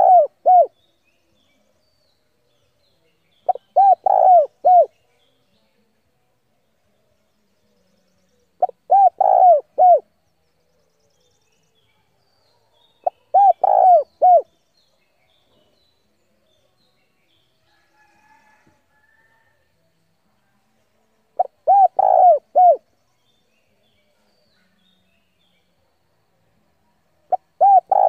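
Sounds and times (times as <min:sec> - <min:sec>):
dove cooing: 0:00.0 - 0:00.7, 0:03.5 - 0:04.9, 0:08.6 - 0:10.0, 0:13.0 - 0:14.5, 0:21.4 - 0:22.8, 0:27.3 - 0:28.0
faint bird chirps: 0:00.0 - 0:05.9, 0:06.8 - 0:19.6, 0:26.8 - 0:28.0.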